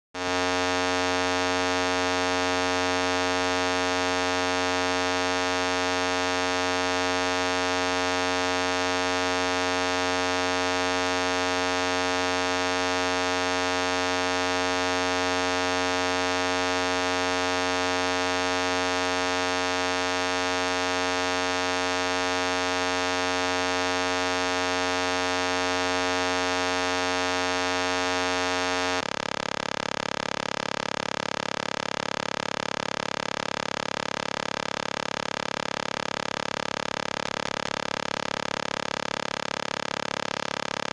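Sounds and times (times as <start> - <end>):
loud steady buzzing tone: 0.2 - 40.9.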